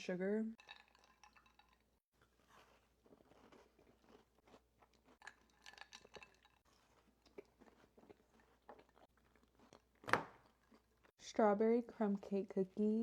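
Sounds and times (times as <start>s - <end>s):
faint cookie chewing crunches: 1.1s - 11.2s.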